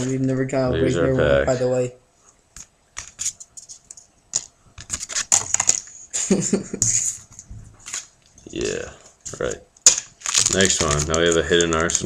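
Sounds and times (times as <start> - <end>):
cards and wrappers crinkling: 4.4 - 6.1, 7.0 - 12.0.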